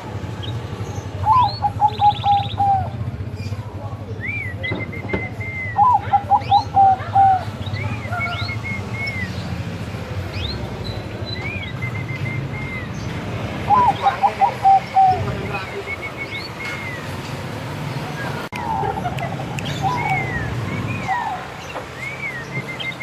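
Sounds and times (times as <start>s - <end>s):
birds chirping: 0.0s - 23.0s
dove cooing: 1.2s - 3.1s, 5.3s - 7.6s, 13.6s - 15.4s.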